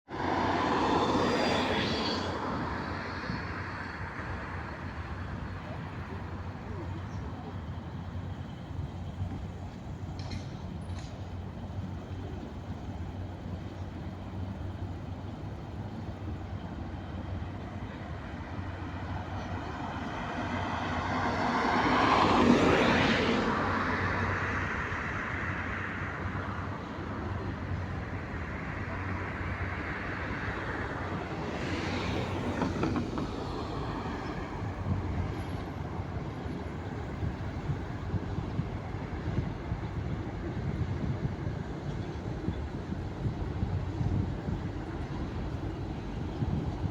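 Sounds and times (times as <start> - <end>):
freight train passing: 0.1 - 46.9.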